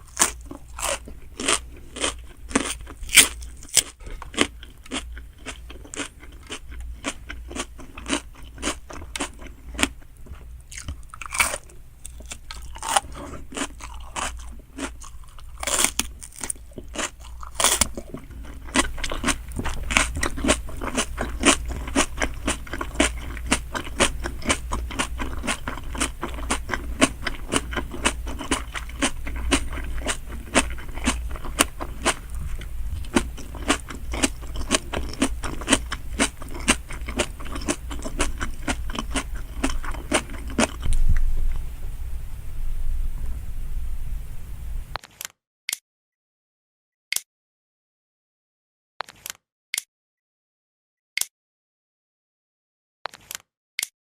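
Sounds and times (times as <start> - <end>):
biting crunches: 0.0 - 41.3
wet chewing: 0.0 - 41.6.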